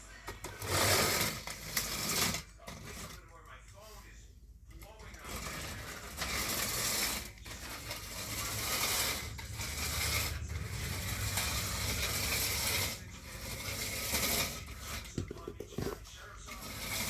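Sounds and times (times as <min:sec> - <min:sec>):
slot car motor whirring: 0:05.3 - 0:17.0
car rattling along track: 0:08.0 - 0:15.1.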